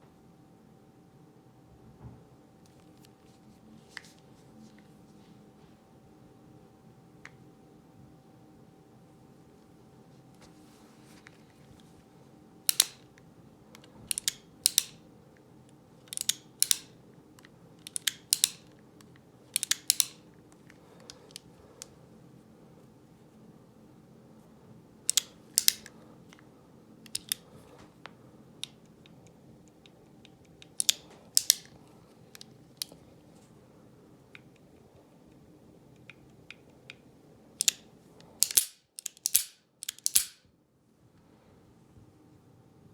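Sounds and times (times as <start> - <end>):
revolver action clicking: 12.7 - 13.1, 13.8 - 15.0, 16.0 - 21.9, 25.1 - 26.4, 27.1 - 27.5, 35.9 - 40.4.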